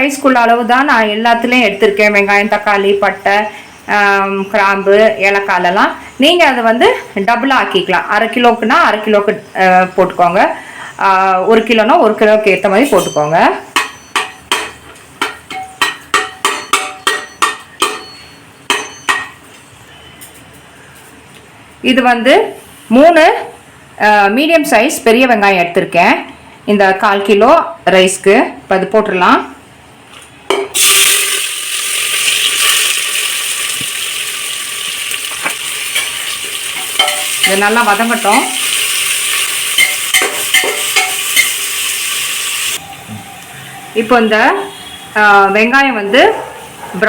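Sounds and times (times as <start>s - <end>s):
onions sizzling in hot oil: 30.7s - 44.0s
metal spoon clinking in pressure cooker: 36.9s - 37.7s, 39.8s - 41.6s.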